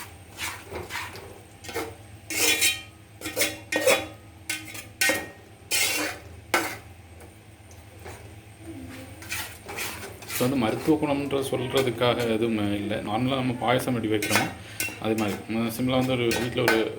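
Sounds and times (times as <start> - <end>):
spoon scraping a cooking pot: 0.0 - 6.9, 9.1 - 12.4, 14.1 - 16.9.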